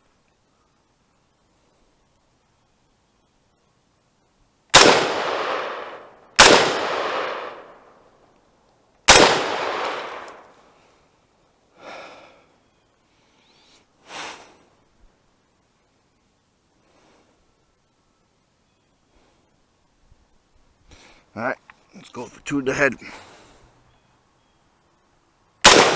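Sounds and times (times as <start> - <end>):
rifle shots echoing: 4.7 - 7.9, 9.1 - 10.5, 25.6 - 25.9.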